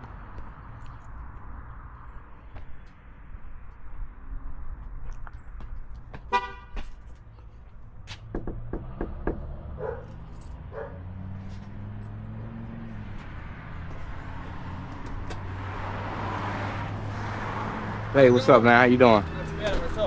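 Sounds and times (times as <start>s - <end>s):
dog barking: 9.8s - 11.1s.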